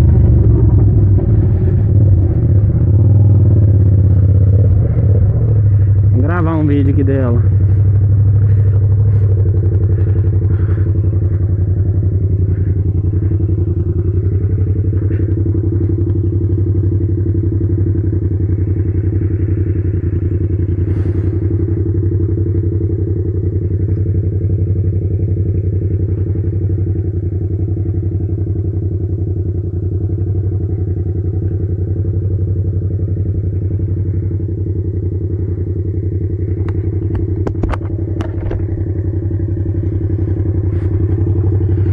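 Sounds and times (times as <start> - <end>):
motorcycle engine idling: 0.0 - 41.9.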